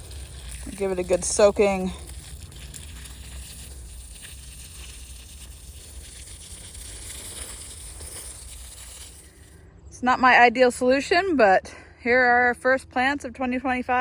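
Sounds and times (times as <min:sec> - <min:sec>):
water spraying onto soil: 0:00.0 - 0:09.6.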